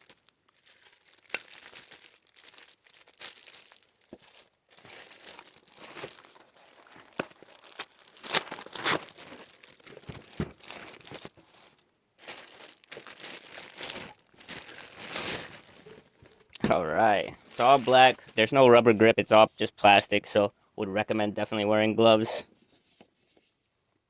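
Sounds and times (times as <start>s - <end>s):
packaging crinkling and rustling: 0.0s - 18.6s.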